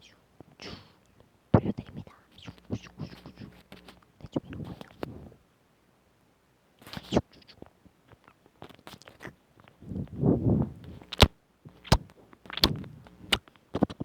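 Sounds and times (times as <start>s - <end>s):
wet mouth clicks and smacks: 11.1s - 13.9s.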